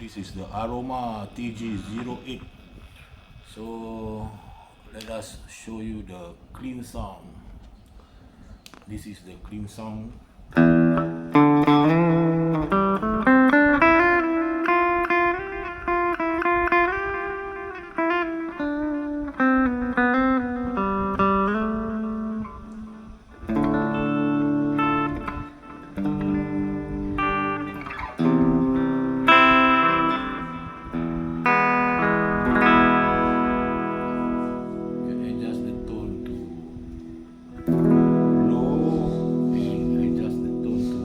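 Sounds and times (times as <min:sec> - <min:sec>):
clean electric guitar melody: 0:10.5 - 0:41.0.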